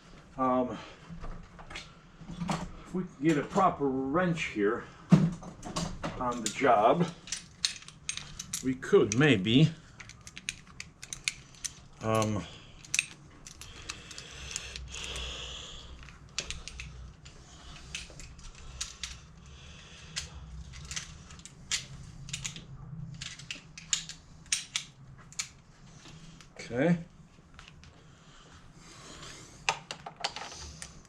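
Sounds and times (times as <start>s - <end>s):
metal hand tools clinking: 6.2s - 15.3s, 16.0s - 17.0s.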